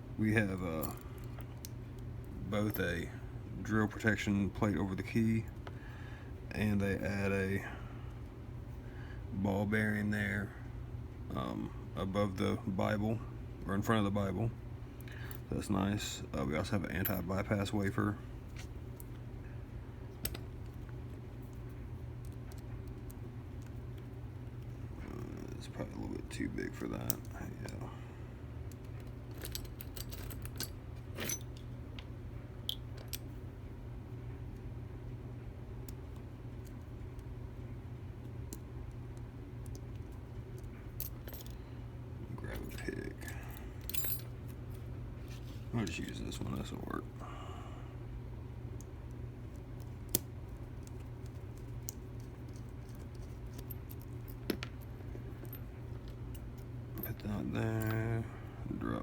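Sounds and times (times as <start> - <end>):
steady low hum: 0.0 - 59.0
metal parts clicking and jingling: 28.8 - 31.7, 40.6 - 41.6, 42.4 - 44.5, 50.8 - 58.3.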